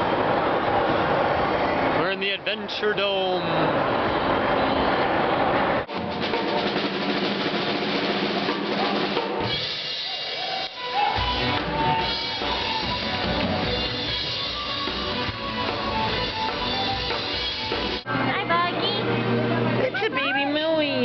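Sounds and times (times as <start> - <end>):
busy background noise: 0.0 - 21.0
music with drum beat: 5.9 - 18.0.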